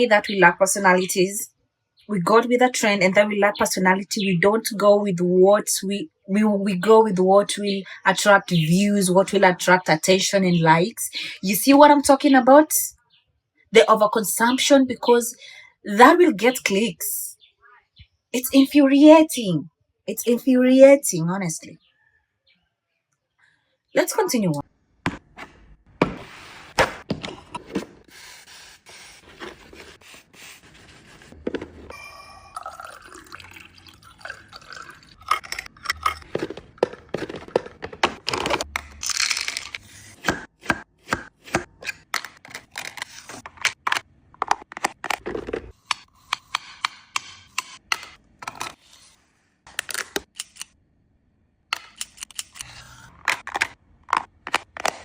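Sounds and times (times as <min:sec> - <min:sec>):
liquid sloshing or pouring: 0:32.4 - 0:36.7.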